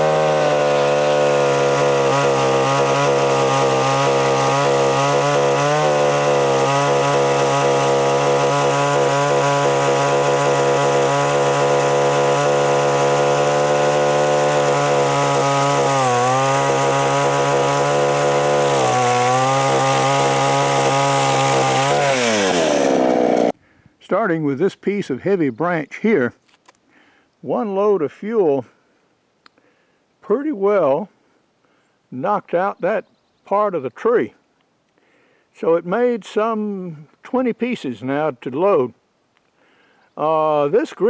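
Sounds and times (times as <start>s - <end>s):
chainsaw cutting limbs: 0.0s - 23.6s.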